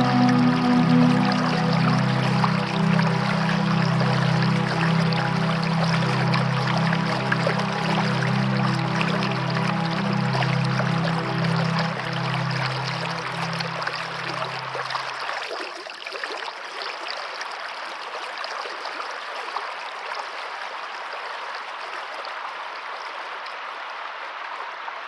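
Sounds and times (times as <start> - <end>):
low sustained music notes: 0.0 - 15.3
running water: 0.0 - 24.9.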